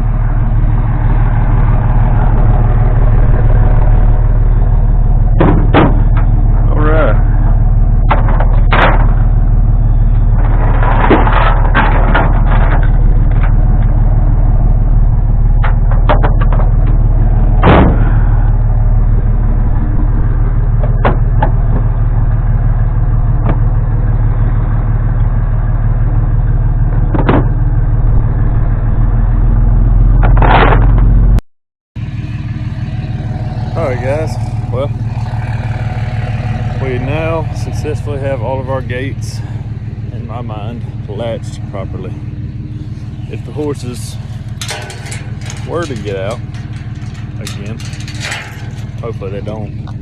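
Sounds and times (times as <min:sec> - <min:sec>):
vehicle engine humming: 0:00.0 - 0:31.4, 0:32.0 - 0:50.0
clanks and knocks: 0:05.4 - 0:06.7, 0:08.0 - 0:09.2, 0:10.4 - 0:13.9, 0:15.6 - 0:17.0, 0:27.1 - 0:27.6, 0:40.5 - 0:50.0.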